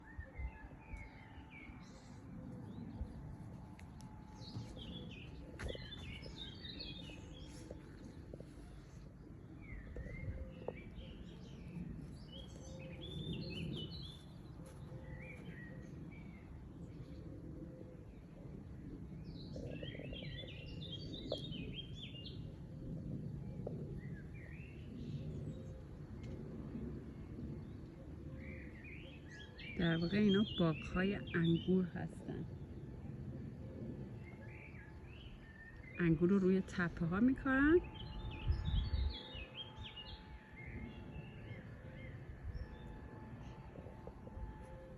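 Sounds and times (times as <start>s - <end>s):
small birds chirping: 0.0s - 18.3s, 18.9s - 26.4s
low wind rumble: 0.0s - 44.9s
outdoor background noise: 0.0s - 44.9s
songbird twittering: 3.8s - 16.6s, 27.6s - 32.7s.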